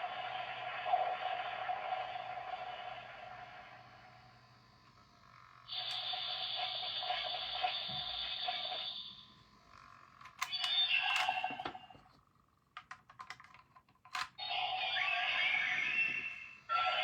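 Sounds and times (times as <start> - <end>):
electronic toy sound effects: 10.4 - 11.9, 14.3 - 17.0.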